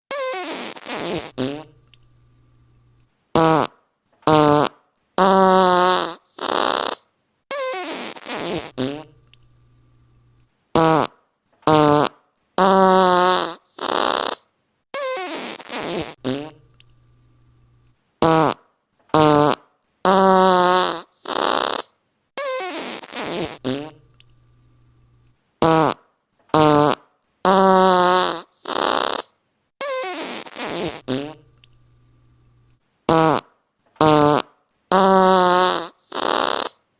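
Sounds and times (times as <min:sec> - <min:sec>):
fart sounds: 0:00.1 - 0:01.8, 0:03.4 - 0:09.2, 0:10.8 - 0:16.7, 0:18.2 - 0:24.1, 0:25.6 - 0:31.5, 0:33.1 - 0:36.9.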